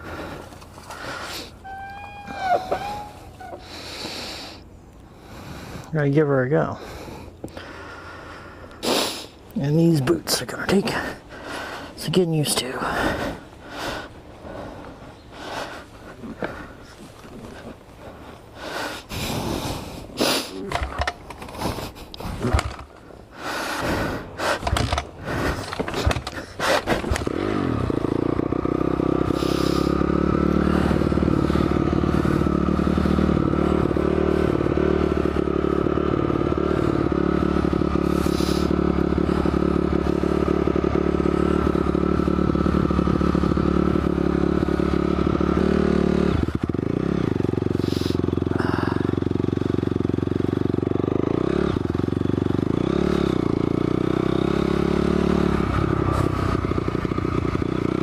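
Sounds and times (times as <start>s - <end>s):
dirt bike engine idling: 0.0s - 8.8s, 9.6s - 58.0s
kick-start clattering: 20.6s - 23.1s, 24.4s - 27.6s.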